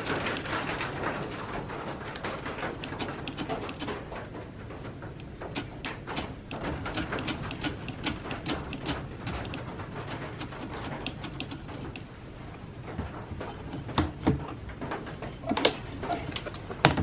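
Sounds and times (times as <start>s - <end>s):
typewriter clicking and clacking: 0.0s - 12.2s.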